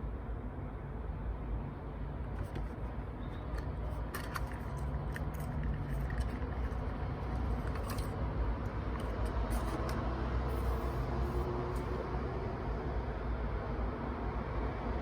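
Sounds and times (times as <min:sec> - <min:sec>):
city traffic rumble: 0:00.0 - 0:15.0
small objects clicking: 0:02.4 - 0:10.0.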